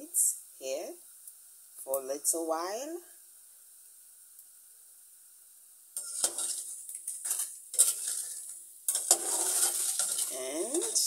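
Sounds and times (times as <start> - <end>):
crackers sizzling in hot oil: 0.1 - 11.0
utensil scraping and knocking pan: 6.0 - 11.0.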